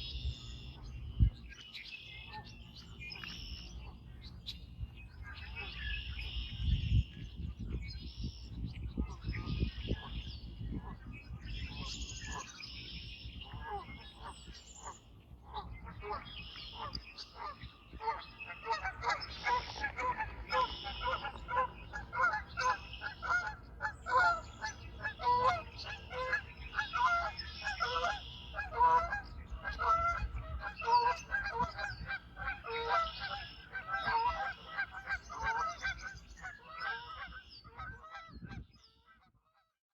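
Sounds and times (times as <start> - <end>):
geese honking: 13.5 - 39.3.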